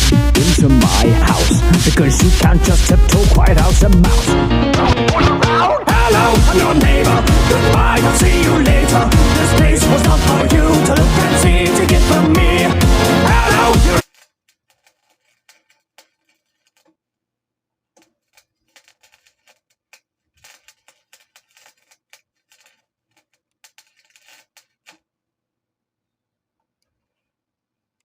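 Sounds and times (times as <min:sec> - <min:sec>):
electronic dance music: 0:00.0 - 0:14.0.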